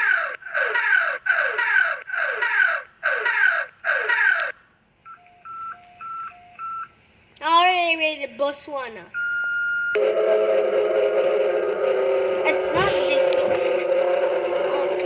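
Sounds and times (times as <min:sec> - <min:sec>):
alternating high and low beeps: 0:05.1 - 0:06.9, 0:09.1 - 0:10.0
falling pitch alert sweeps: 0:09.9 - 0:15.0.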